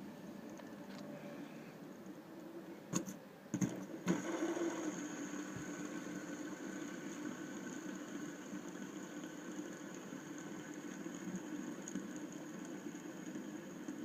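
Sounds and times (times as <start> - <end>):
fidget spinner whirring: 2.9 - 14.0.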